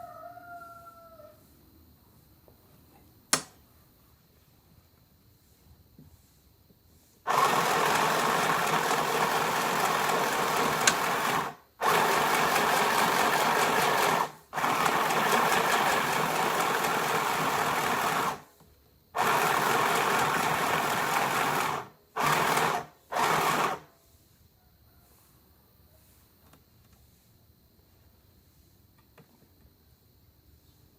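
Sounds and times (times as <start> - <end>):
sewing machine running: 7.3 - 18.5, 19.2 - 23.9.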